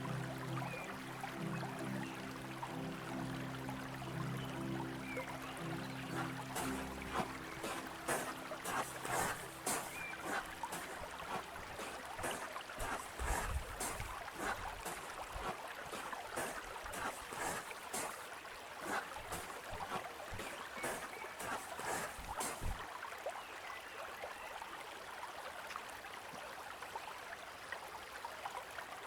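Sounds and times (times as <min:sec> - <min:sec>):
footsteps crunching on gravel: 0:06.0 - 0:18.2, 0:18.8 - 0:22.8.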